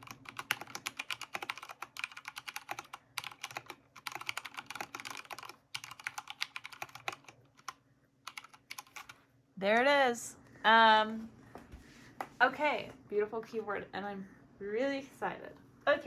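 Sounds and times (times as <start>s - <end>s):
mechanical keyboard typing: 0.0s - 9.2s.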